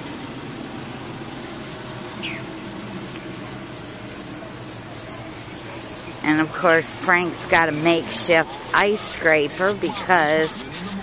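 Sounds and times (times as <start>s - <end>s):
ice scraper scraping frost: 6.4s - 11.0s.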